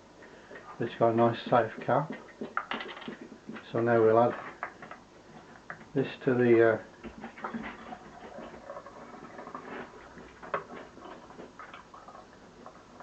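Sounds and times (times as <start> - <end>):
containers clicking and tapping: 1.8 - 3.7.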